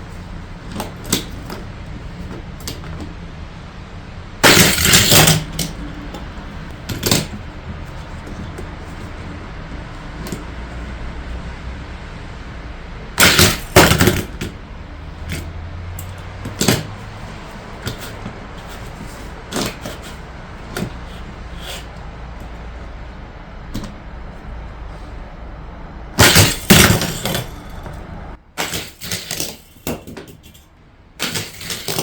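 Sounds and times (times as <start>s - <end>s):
plastic toy track clicking: 31.2s - 32.0s.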